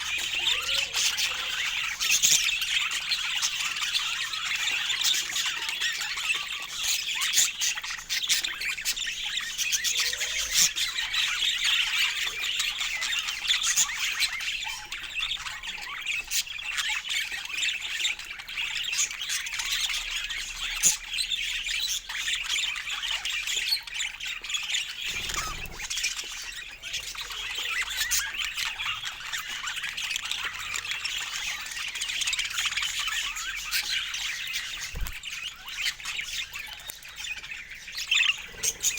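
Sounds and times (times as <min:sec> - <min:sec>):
budgerigars chattering: 0:00.0 - 0:38.9.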